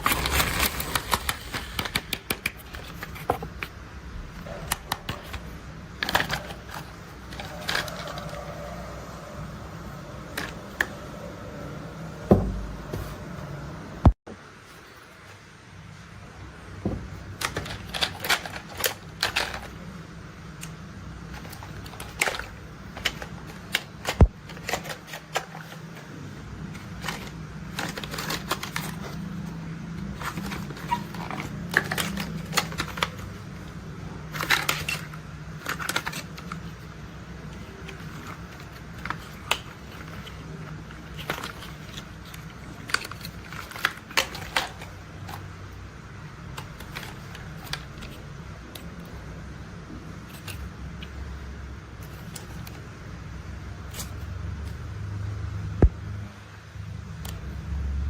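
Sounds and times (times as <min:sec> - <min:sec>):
plastic toys clicking and rattling: 0:04.4 - 0:08.7, 0:17.3 - 0:20.0, 0:20.6 - 0:45.6.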